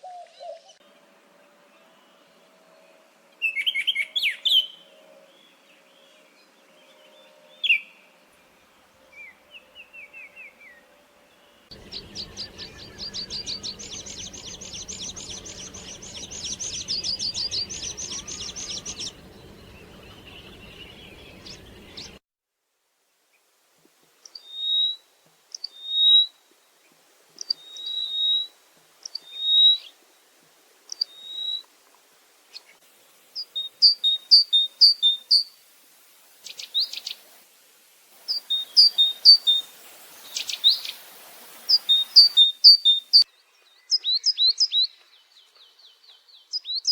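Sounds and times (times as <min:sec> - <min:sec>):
low steady background noise: 0:00.0 - 0:46.9
songbirds singing: 0:01.7 - 0:22.2, 0:38.3 - 0:41.1, 0:41.7 - 0:46.9.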